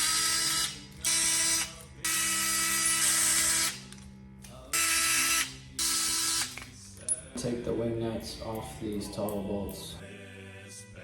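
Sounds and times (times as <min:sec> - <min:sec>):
drill-driver bursts: 0:00.0 - 0:03.8, 0:04.8 - 0:06.6.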